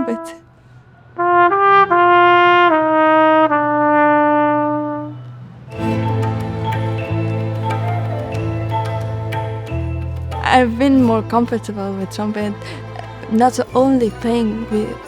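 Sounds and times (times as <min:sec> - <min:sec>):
solo trumpet: 0:00.0 - 0:00.5, 0:01.2 - 0:10.5
ensemble music: 0:05.6 - 0:15.0.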